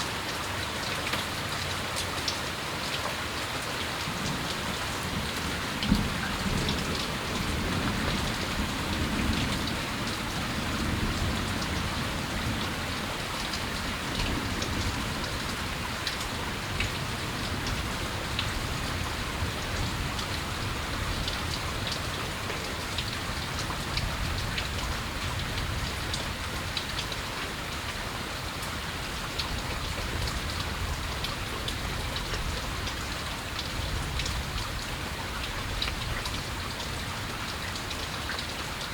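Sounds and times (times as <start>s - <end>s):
raindrops ticking on hard surfaces: 0.0s - 38.9s
steady rain falling: 0.0s - 38.9s
distant thunder rumble: 5.1s - 13.1s.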